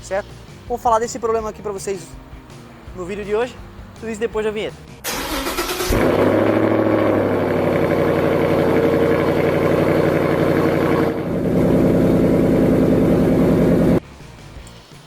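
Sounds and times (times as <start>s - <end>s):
car engine running: 5.1s - 14.0s.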